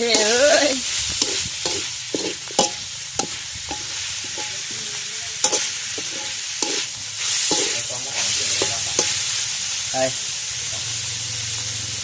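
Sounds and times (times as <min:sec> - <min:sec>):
spatula scraping and knocking pan: 0:00.0 - 0:09.3
food sizzling in a wok: 0:00.0 - 0:12.0.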